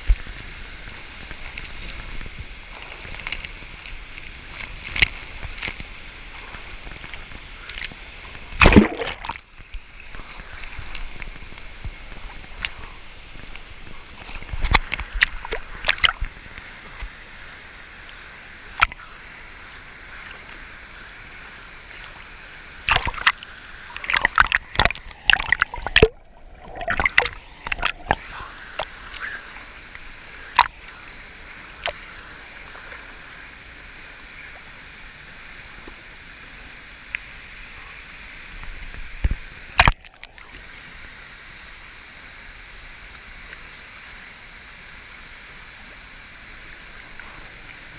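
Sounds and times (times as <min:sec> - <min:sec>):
waterfall and river rushing: 0:00.0 - 0:47.9
splashes: 0:00.9 - 0:09.5, 0:10.1 - 0:16.5, 0:22.8 - 0:31.0, 0:39.7 - 0:40.6.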